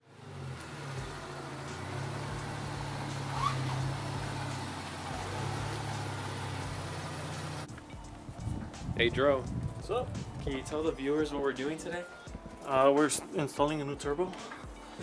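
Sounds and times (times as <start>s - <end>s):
car engine idling: 0.0s - 11.0s.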